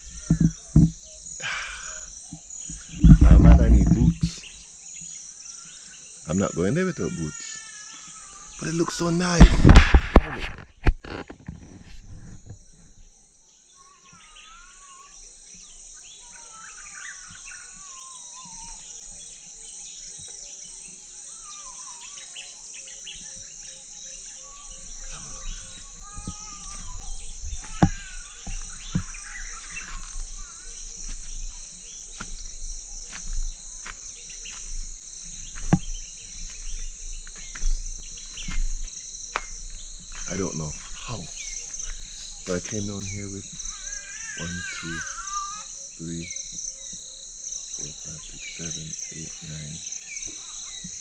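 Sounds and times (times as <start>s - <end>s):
birds whistling: 0.0s - 10.0s, 21.3s - 51.0s
insects chirping: 0.0s - 51.0s
sharp knocks: 0.1s - 1.0s, 27.6s - 29.2s.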